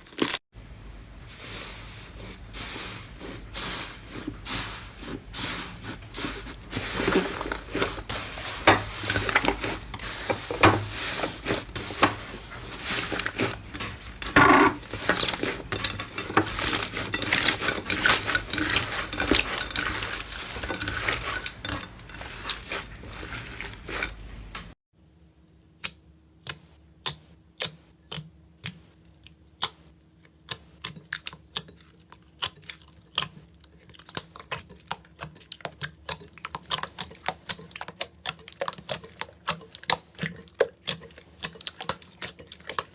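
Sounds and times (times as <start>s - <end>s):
slime squelching and crackling: 1.3s - 24.7s.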